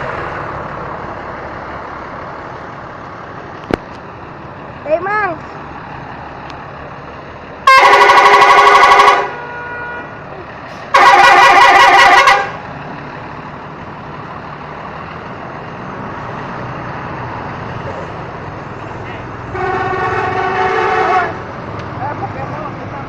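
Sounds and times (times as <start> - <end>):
vehicle hum: 0.0 - 23.0
bus multi-tone horn: 7.6 - 12.7, 19.1 - 21.4.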